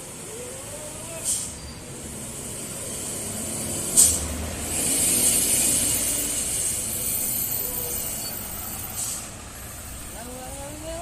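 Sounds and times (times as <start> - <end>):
bus air brakes hissing: 1.1 - 10.2.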